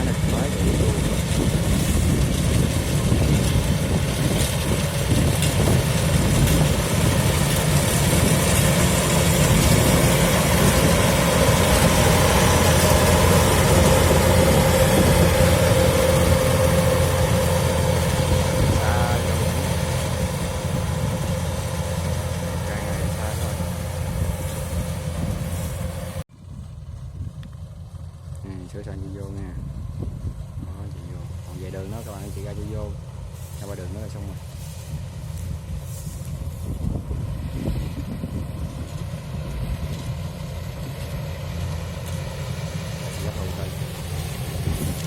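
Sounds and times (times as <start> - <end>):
diesel engine droning: 0.0 - 45.0.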